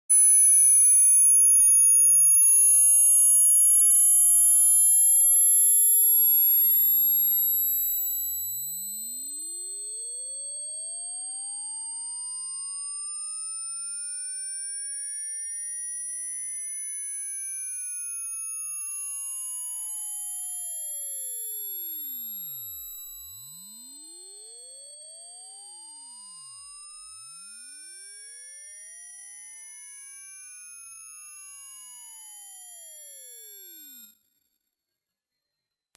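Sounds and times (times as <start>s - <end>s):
high sine tone rising in pitch: 7.1s - 35.7s.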